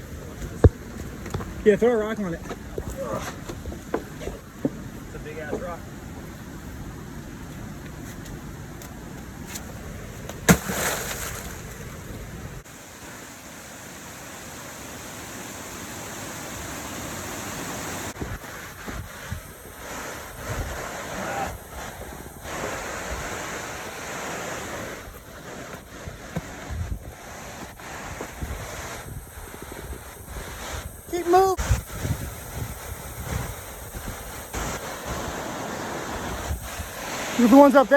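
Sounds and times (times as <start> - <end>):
rushing water: 0.0 - 37.9
wind: 0.0 - 37.9
rock landing impact: 10.2 - 11.9.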